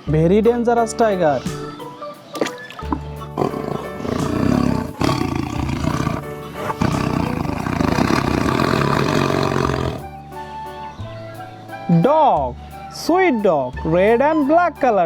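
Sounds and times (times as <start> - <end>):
background music: 0.0 - 15.0
tiger roaring: 3.4 - 10.1.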